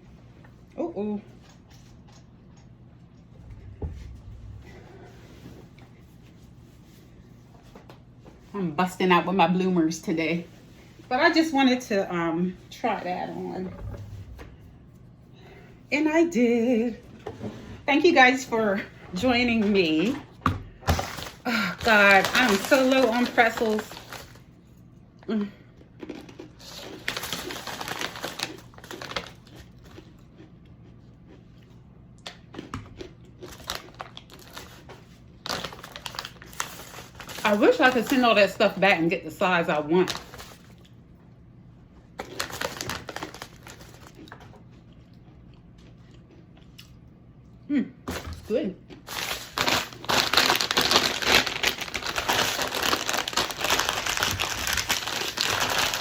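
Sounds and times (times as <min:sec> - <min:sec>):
plastic packaging crinkling: 0:20.9 - 0:24.4, 0:26.1 - 0:29.9, 0:33.4 - 0:38.5, 0:40.0 - 0:40.9, 0:42.2 - 0:44.5, 0:49.0 - 0:56.0.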